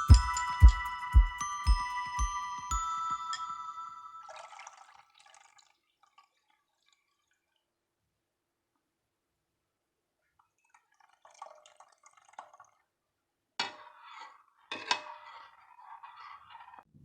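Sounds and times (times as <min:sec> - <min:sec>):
sharp clinks: 0:00.0 - 0:04.4
liquid dripping and pouring: 0:04.2 - 0:07.8, 0:10.4 - 0:13.0.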